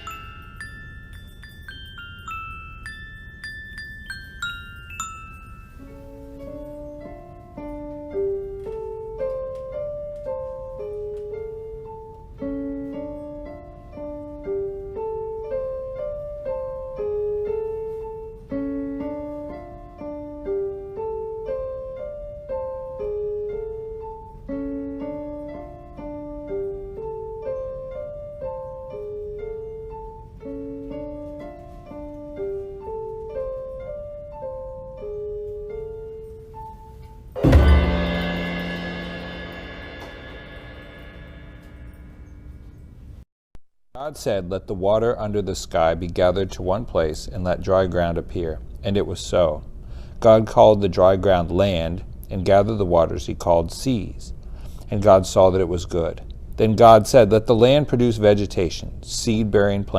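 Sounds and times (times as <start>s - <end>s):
gentle piano melody: 0.0s - 43.2s.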